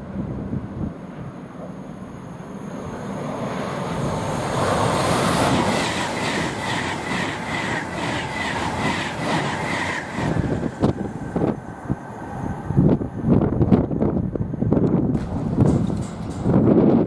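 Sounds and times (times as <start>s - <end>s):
train passing at speed: 0.0s - 17.0s
train wheel clicks: 5.4s - 11.0s, 15.2s - 17.0s.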